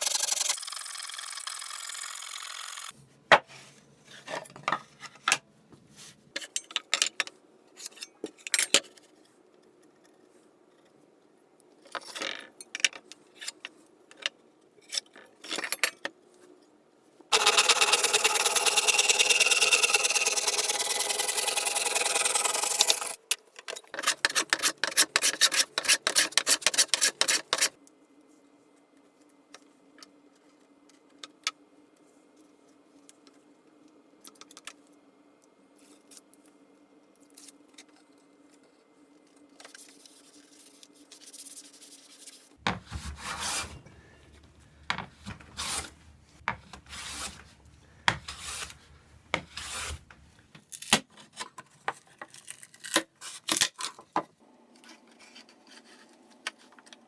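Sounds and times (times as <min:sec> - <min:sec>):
rasping strokes on wood: 0:17.3 - 0:23.2.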